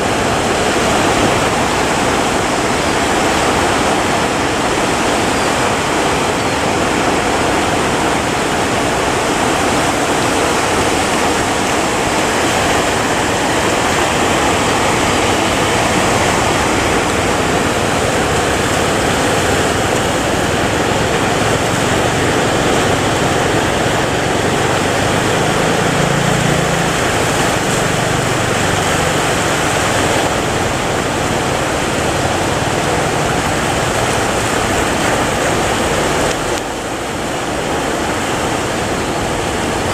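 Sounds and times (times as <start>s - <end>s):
rough sea rushing: 0.0s - 39.9s
wind: 0.0s - 39.9s.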